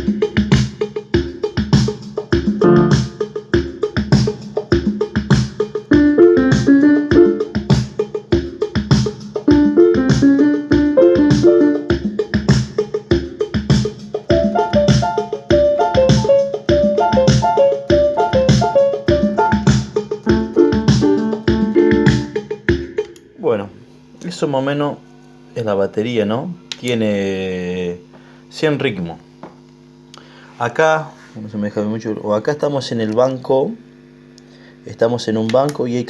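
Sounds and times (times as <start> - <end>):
drum machine rhythm: 0.0 - 23.4
piano-like keyboard notes: 2.6 - 3.3, 5.9 - 7.9, 9.5 - 12.0, 14.3 - 22.4.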